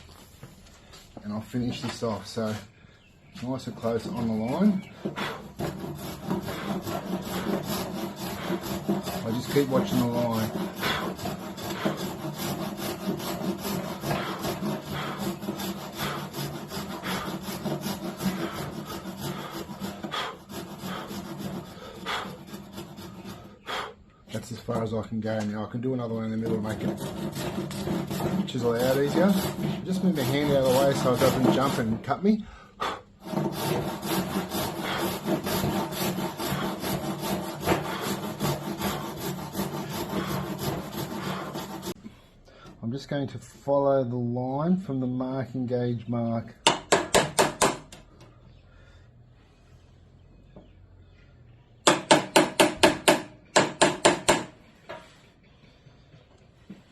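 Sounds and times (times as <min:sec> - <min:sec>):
hand saw cutting timber: 0:03.4 - 0:24.9, 0:25.5 - 0:32.2, 0:32.8 - 0:42.0, 0:51.9 - 0:54.5.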